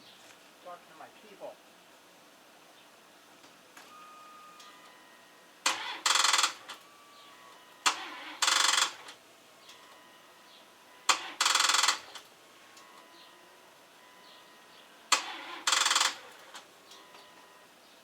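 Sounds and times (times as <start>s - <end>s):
starter solenoid clicking: 5.6s - 6.8s, 7.8s - 9.2s, 11.1s - 12.3s, 15.1s - 17.3s.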